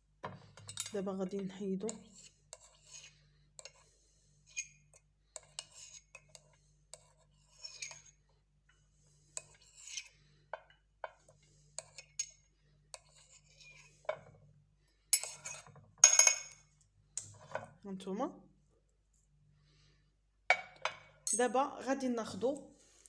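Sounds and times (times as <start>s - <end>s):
metal spoon scraping in glass: 1.8s - 3.8s, 4.5s - 4.8s, 5.4s - 8.2s, 9.4s - 10.1s, 13.0s - 14.2s, 15.2s - 15.8s.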